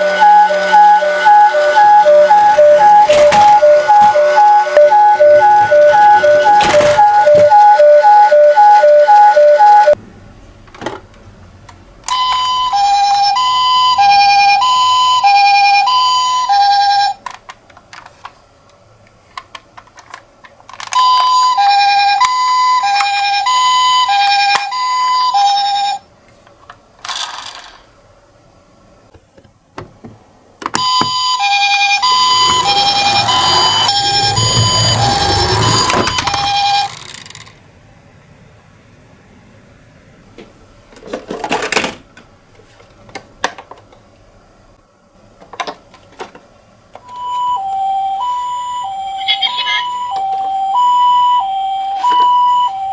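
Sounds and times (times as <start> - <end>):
toy ambulance two-tone siren: 0.0 - 10.0, 12.1 - 17.2, 20.8 - 26.0, 30.8 - 37.3, 47.0 - 52.9.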